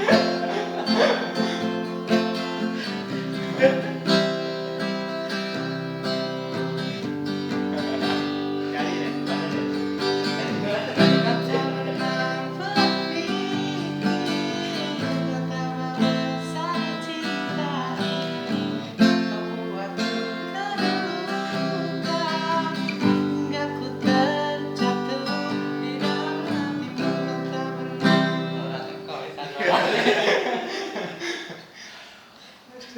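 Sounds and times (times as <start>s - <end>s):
acoustic guitar strumming chords: 0.0s - 29.4s
person singing a pop ballad: 8.0s - 28.7s.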